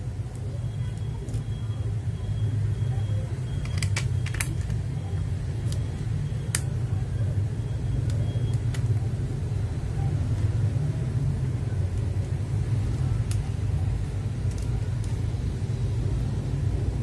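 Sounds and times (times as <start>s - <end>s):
small plastic parts clicking: 3.6s - 4.8s, 14.4s - 15.2s.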